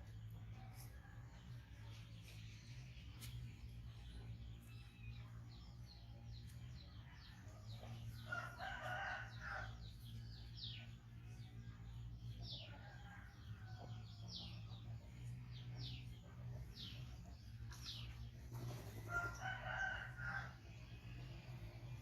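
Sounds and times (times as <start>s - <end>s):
rooster crowing: 19.1s - 20.6s.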